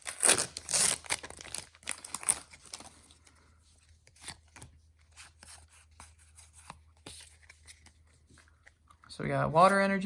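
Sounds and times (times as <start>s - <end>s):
foil wrapper crinkling and tearing: 0.0s - 3.0s.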